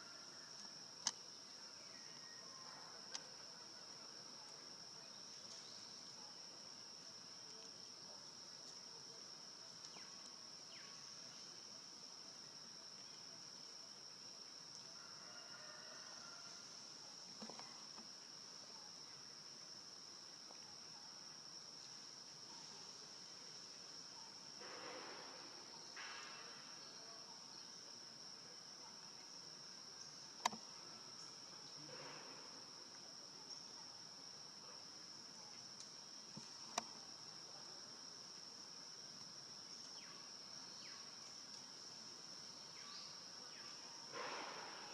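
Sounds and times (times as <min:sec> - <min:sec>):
shrill insect chorus: 0:00.0 - 0:44.9
sharp click: 0:30.4 - 0:30.6.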